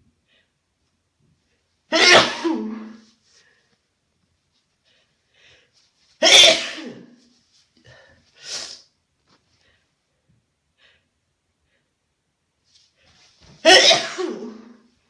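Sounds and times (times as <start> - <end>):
person sneezing: 1.9 - 3.2, 6.2 - 7.3, 7.9 - 8.9, 13.5 - 14.9.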